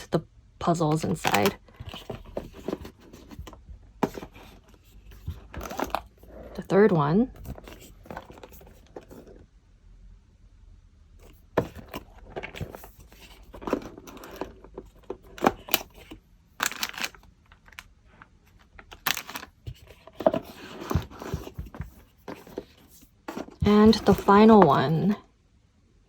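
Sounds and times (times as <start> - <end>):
packaging rustling and crinkling: 7.4 - 9.4, 11.2 - 17.9, 18.5 - 25.0.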